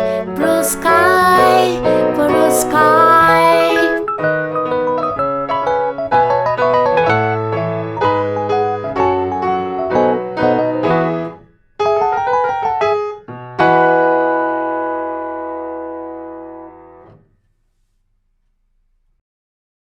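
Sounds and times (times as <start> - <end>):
piano playing: 0.0 - 17.2.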